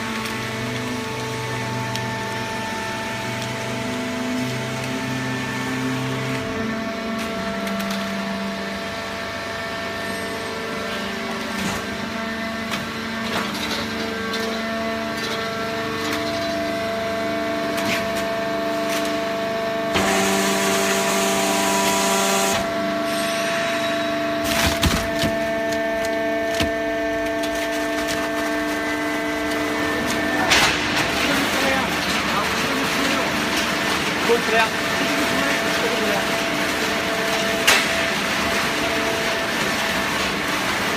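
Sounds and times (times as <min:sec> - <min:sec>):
cardboard cracking and crunching: 0:24.4 - 0:33.2.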